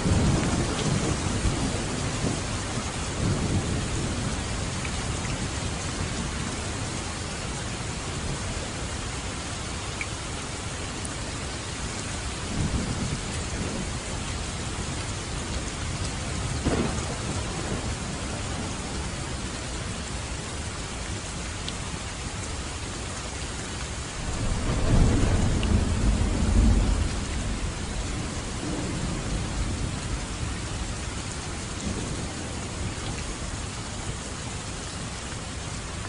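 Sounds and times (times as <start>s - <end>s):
rolling thunder: 0.0s - 4.8s, 15.5s - 19.6s, 24.2s - 33.5s
heavy rain: 0.0s - 36.0s.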